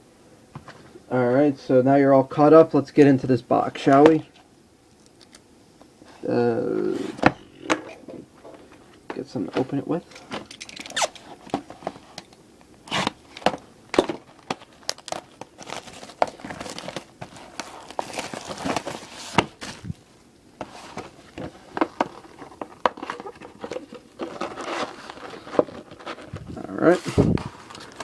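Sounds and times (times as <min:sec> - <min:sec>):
plastic wrap crinkling: 0:12.9 - 0:20.0, 0:20.6 - 0:28.0.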